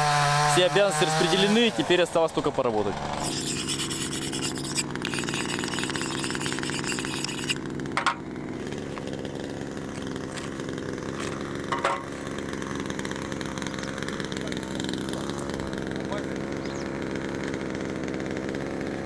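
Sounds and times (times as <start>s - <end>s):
chainsaw cutting wood: 0.0s - 1.8s, 3.1s - 19.0s.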